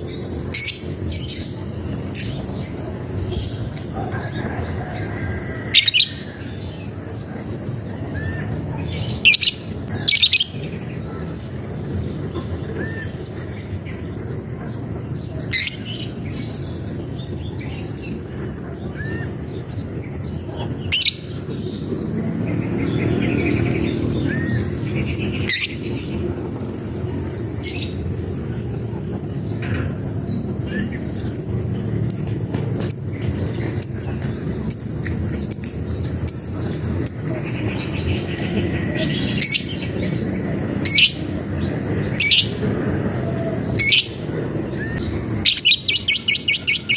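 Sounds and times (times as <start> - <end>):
high insect drone: 0.0 - 46.9
songbird sharp high chirps: 44.8 - 46.9.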